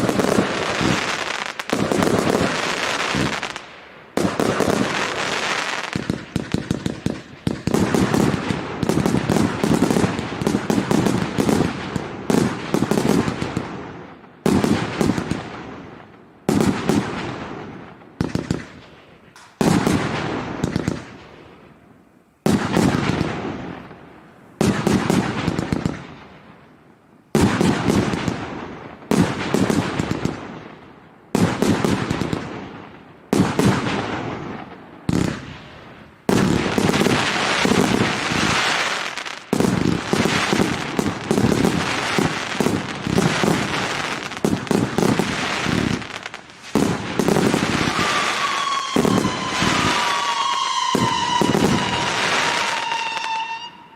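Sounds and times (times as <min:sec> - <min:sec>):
firework cake firing volleys: 0:00.0 - 0:16.0, 0:33.4 - 0:53.9.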